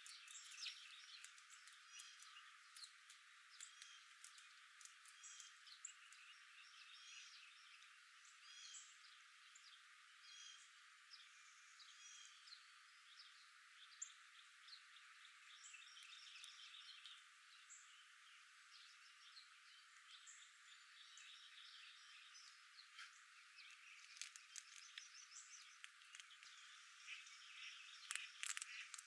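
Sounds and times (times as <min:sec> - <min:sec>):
light outdoor hiss: 0:00.0 - 0:29.0
small birds chirping and trilling: 0:00.0 - 0:29.0.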